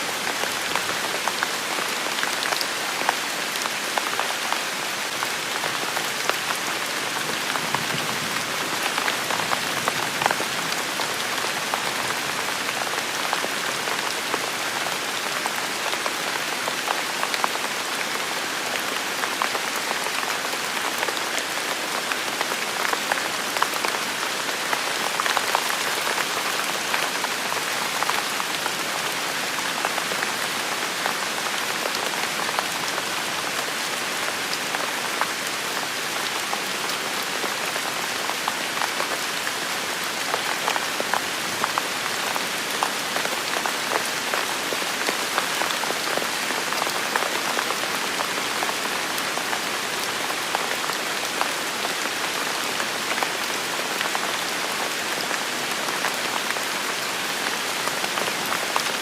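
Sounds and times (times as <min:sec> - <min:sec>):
rain on hard surfaces: 0:00.0 - 0:59.0.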